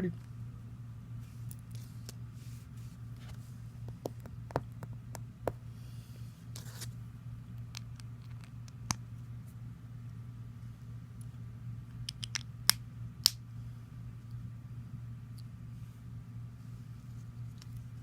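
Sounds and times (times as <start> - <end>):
steady low hum: 0.0 - 18.0
plastic bricks snapping: 12.0 - 13.4.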